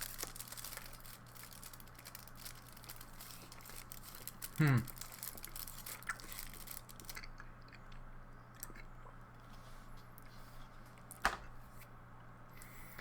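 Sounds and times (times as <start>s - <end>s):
crackly clicks: 0.0s - 7.2s
person chewing chocolate: 0.0s - 9.4s
steady low hum: 0.0s - 13.0s.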